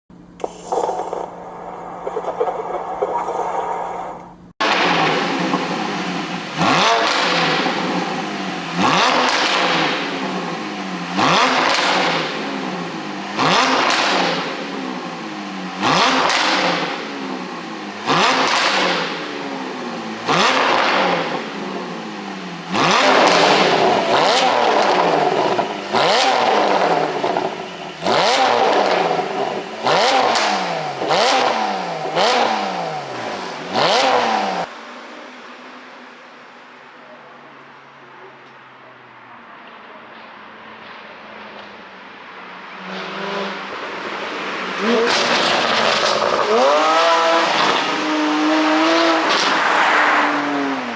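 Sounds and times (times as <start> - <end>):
engine revving with exhaust pops: 0.1 - 50.9.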